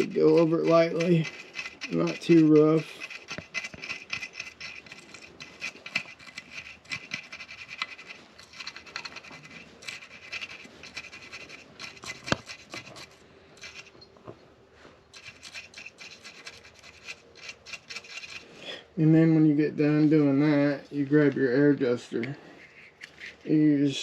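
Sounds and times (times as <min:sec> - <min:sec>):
toothbrush scratching metal: 0:00.0 - 0:14.0, 0:15.1 - 0:18.6, 0:22.5 - 0:23.5.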